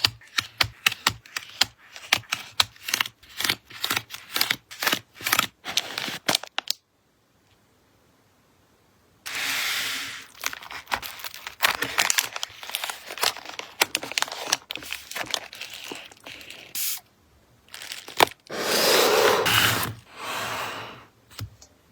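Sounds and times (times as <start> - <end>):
packing material tearing: 2.0 - 6.7, 9.3 - 17.0, 17.7 - 18.5
plastic crinkling and rustling: 4.1 - 6.8, 10.2 - 17.0, 17.6 - 18.5.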